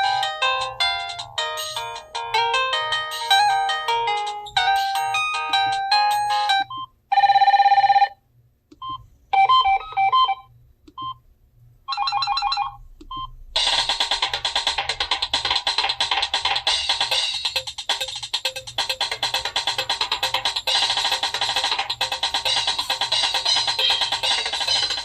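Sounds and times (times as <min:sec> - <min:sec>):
ringtone with drum beat: 0:00.0 - 0:08.1, 0:08.8 - 0:11.2, 0:11.9 - 0:25.0
phone ringtone melody: 0:00.0 - 0:08.2, 0:11.9 - 0:12.8, 0:17.5 - 0:25.0.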